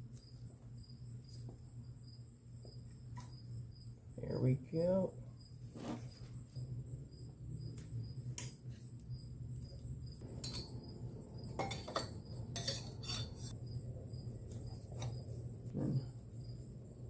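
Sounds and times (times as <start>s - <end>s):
cricket chirping: 0.0s - 17.0s
low hum: 6.4s - 17.0s
metallic clinks of engine parts: 10.2s - 13.6s.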